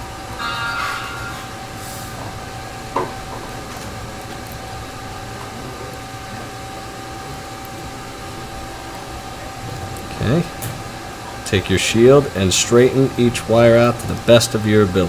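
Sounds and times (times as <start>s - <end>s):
room hum: 0.0s - 15.0s.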